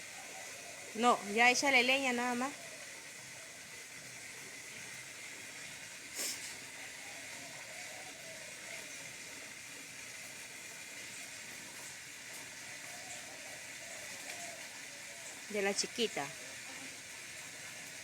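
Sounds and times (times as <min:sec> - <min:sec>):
campfire hissing: 0:00.0 - 0:18.0.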